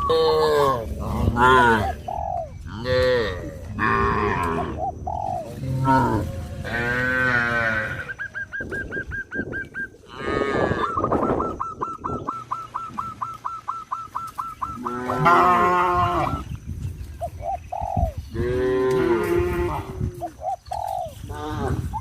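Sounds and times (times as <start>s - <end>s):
cattle mooing: 2.8s - 4.8s, 5.6s - 8.2s, 10.1s - 10.9s, 14.8s - 16.4s.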